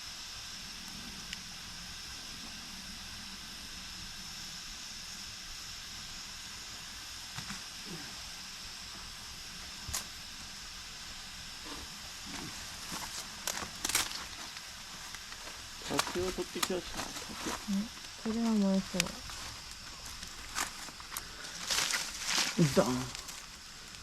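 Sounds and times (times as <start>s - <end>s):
campfire hissing: 0.0s - 24.0s
fire popping: 11.6s - 24.0s.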